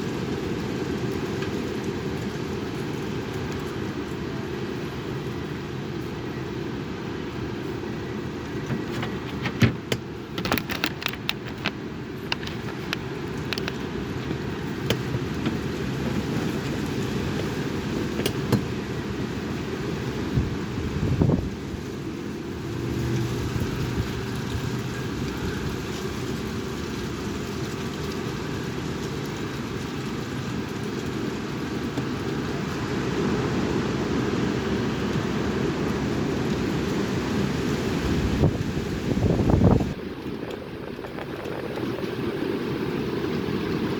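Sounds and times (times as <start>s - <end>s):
wind buffeting microphone: 7.8s - 43.9s
sharp clicks and rattles: 8.6s - 17.5s.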